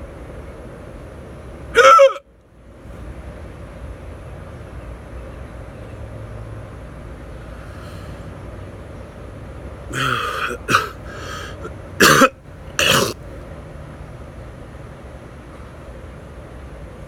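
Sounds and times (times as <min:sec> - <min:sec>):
man hiccuping: 0:01.8 - 0:02.2, 0:09.9 - 0:13.2.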